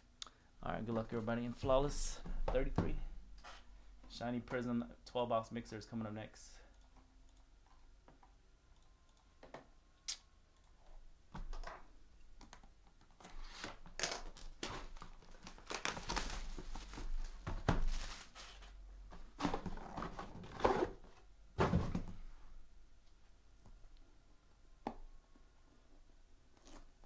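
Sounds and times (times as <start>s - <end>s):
packaging torn open and crinkled: 14.0s - 16.6s.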